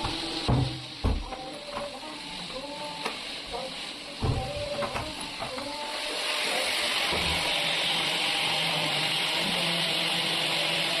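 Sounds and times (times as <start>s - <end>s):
electric drill boring into marble: 6.2s - 11.0s.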